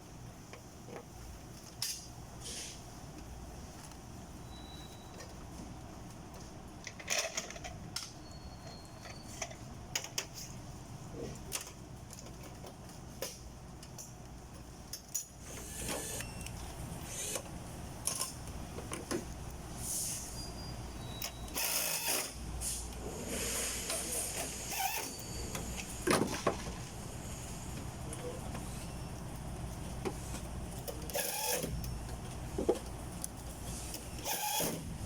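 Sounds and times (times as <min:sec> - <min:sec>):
short hissing bursts: 0:02.4 - 0:02.9, 0:19.8 - 0:20.5, 0:22.6 - 0:25.1.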